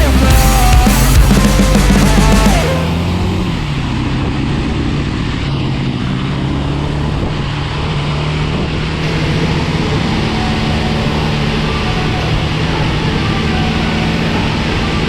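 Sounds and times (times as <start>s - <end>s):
vehicle engine humming: 0.0s - 15.0s
wind and road noise: 2.7s - 15.0s.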